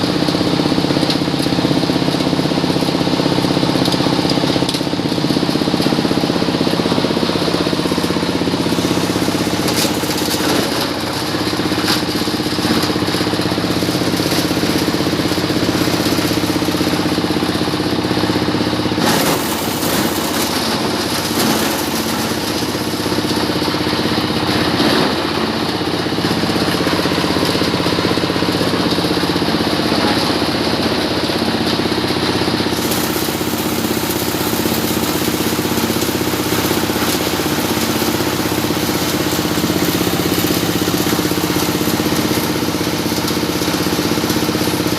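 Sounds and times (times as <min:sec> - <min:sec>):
shredder engine grinding: 0:00.0 - 0:44.9.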